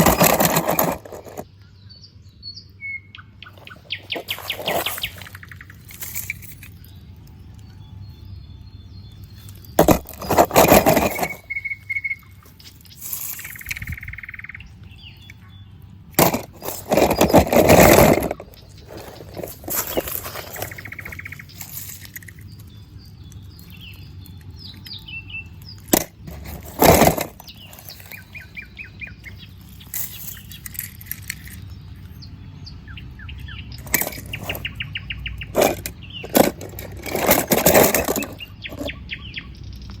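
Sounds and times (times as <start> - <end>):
small birds chirping: 0.0 - 40.0
dry leaves rustling: 3.6 - 7.0, 9.5 - 14.0, 16.2 - 24.0.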